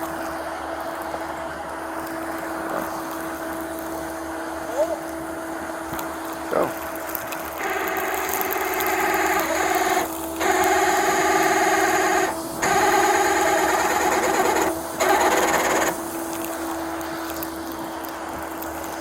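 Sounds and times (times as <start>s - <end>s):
steady hum: 0.0s - 19.0s
winch grinding under strain: 5.0s - 19.0s.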